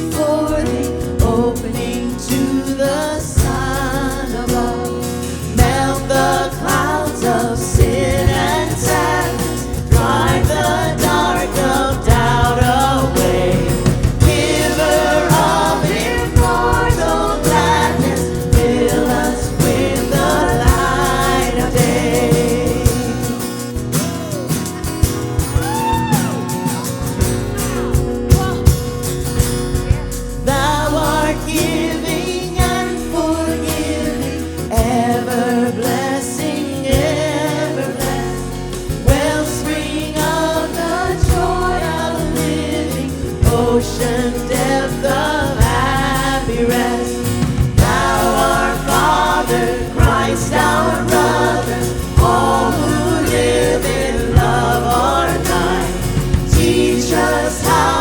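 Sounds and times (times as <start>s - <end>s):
band playing with guitar: 0.0s - 58.0s
people singing: 0.0s - 58.0s.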